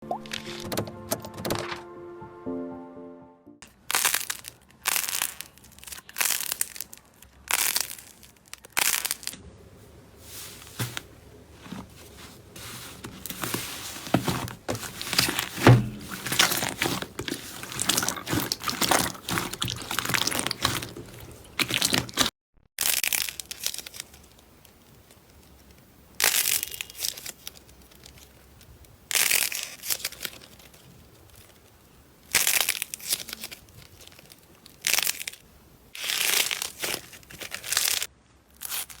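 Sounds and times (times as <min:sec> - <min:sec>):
slime squished by hand: 0:13.3 - 0:22.3.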